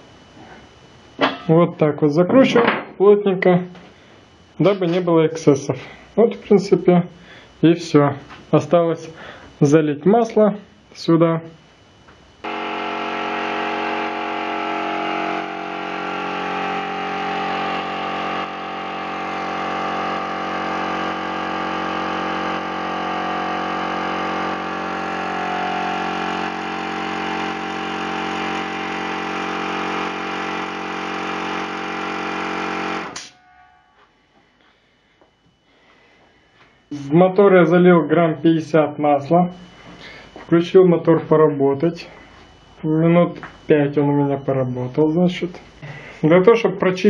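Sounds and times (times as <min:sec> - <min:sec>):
air compressor running: 0:03.8 - 0:05.0, 0:07.2 - 0:07.6, 0:09.1 - 0:09.6, 0:12.1 - 0:37.1, 0:39.6 - 0:40.5, 0:45.6 - 0:46.3.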